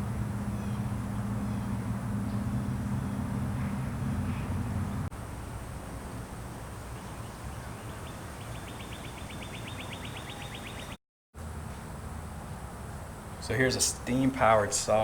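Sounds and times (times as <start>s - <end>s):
steady low rumble: 0.0s - 6.3s
bird trilling rapidly: 0.4s - 5.0s, 7.6s - 11.0s.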